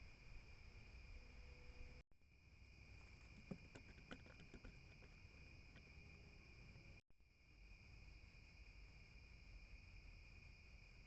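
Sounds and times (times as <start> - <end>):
crickets chirring: 0.0 - 11.0
faint clicks and taps: 3.2 - 5.9.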